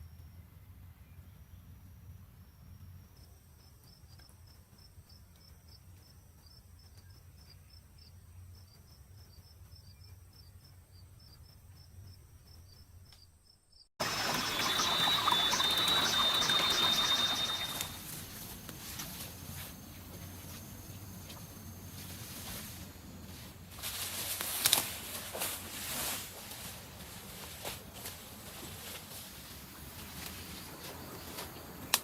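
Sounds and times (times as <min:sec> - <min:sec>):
faint insects chirping: 0:01.8 - 0:32.0
steady high whine: 0:14.0 - 0:23.7.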